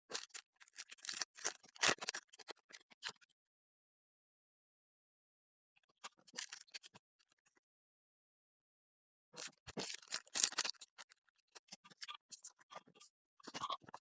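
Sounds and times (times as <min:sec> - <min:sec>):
packaging crinkling: 0:00.7 - 0:02.2, 0:09.8 - 0:10.8.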